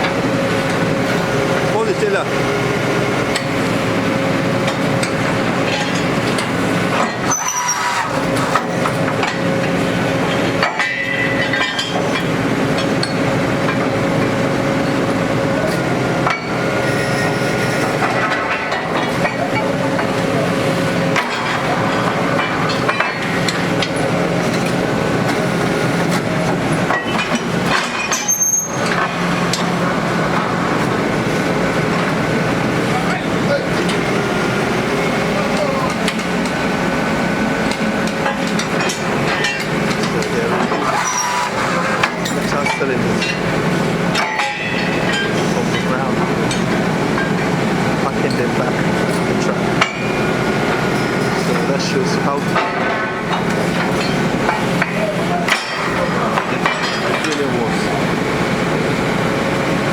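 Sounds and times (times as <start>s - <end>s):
drilling rig engine running: 0.0s - 59.9s
short squeals: 7.1s - 8.4s, 16.8s - 18.0s, 28.2s - 28.9s, 40.8s - 41.8s
metallic clanks: 37.7s - 47.5s, 50.8s - 58.0s.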